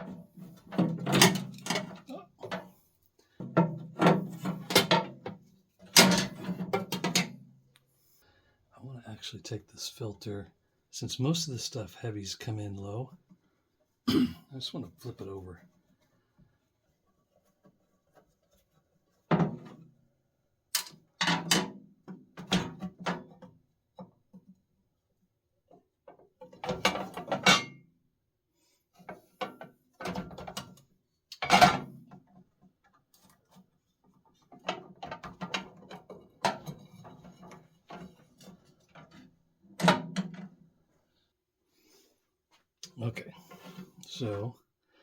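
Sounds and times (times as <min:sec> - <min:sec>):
parts clunking and rattling: 0:00.0 - 0:07.5, 0:31.4 - 0:40.7.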